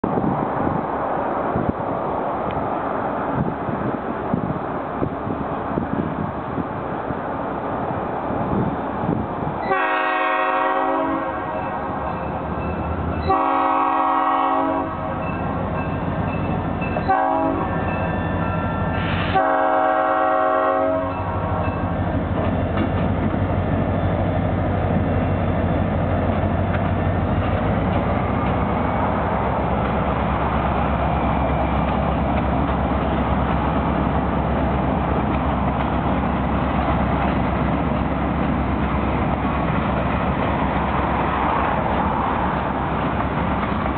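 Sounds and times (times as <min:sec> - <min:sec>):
train cars rumbling on rails: 0:00.0 - 0:43.9
locomotive air horn blasts: 0:09.6 - 0:12.0, 0:13.2 - 0:15.2, 0:17.0 - 0:17.9, 0:19.0 - 0:21.6.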